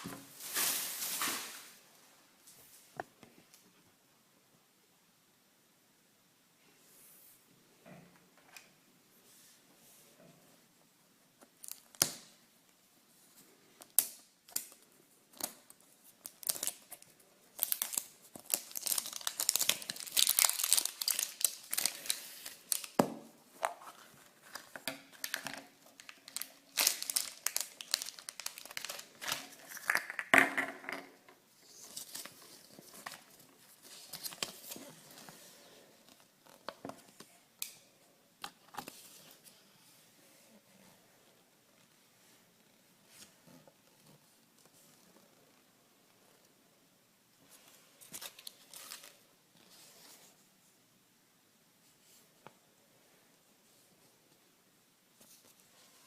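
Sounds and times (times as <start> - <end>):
wrapping torn and crinkled: 16.2 - 23.0, 24.5 - 30.1.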